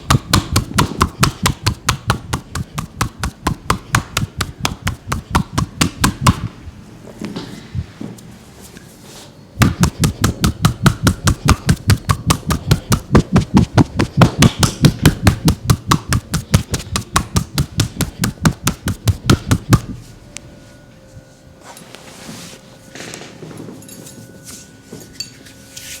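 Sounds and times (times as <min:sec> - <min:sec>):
rapid massage strikes on back: 0:00.0 - 0:06.6, 0:09.6 - 0:20.1.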